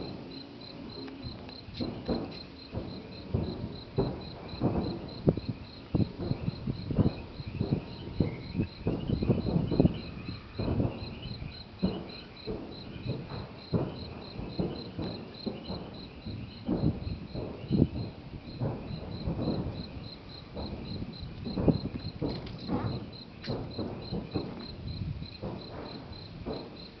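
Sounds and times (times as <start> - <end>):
crickets chirping: 0.0 - 27.0.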